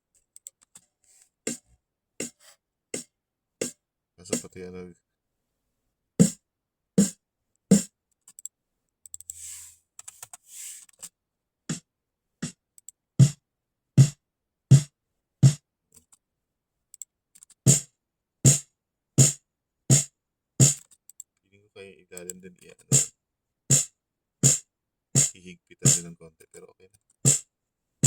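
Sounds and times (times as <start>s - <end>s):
short hiss: 9.3s - 9.8s
snare drum hits: 19.2s - 20.8s, 23.7s - 24.6s, 25.2s - 26.0s.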